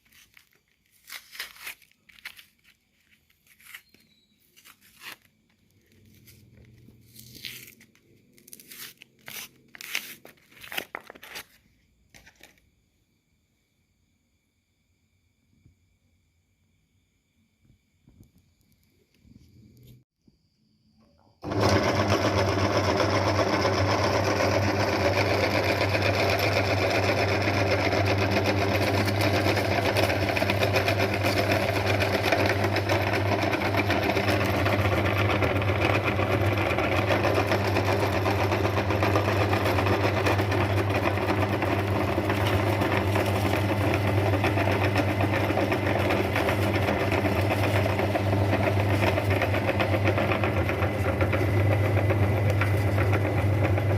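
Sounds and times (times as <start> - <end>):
meat grinder motor humming: 21.4 - 53.9.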